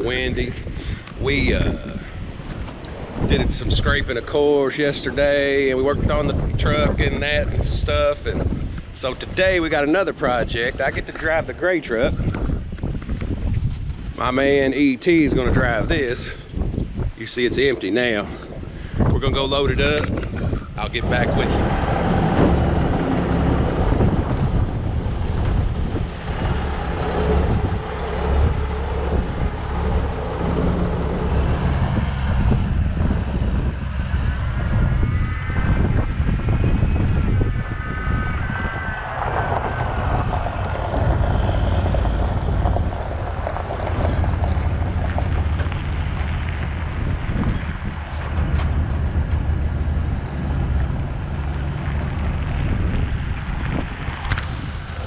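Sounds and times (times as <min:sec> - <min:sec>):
wind buffeting microphone: 0:00.0 - 0:55.0
high whine: 0:17.6 - 0:55.0
truck engine running: 0:19.8 - 0:55.0.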